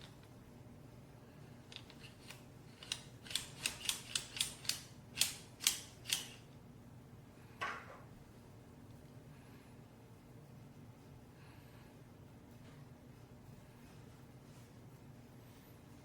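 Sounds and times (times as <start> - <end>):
metal tripod head clicks: 1.8 - 6.4.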